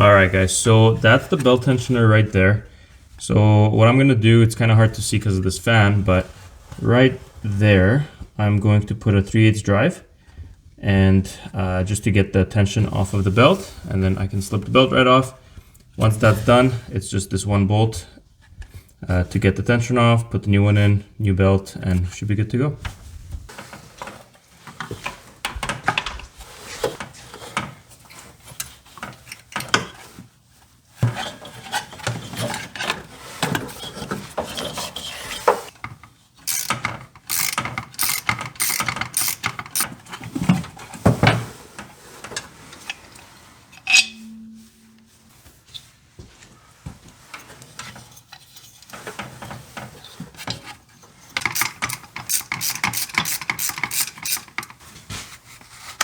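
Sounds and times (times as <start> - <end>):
ratchet wrench clicking: 36.5 - 40.0, 51.5 - 54.7
tools clinking on metal: 43.8 - 45.1.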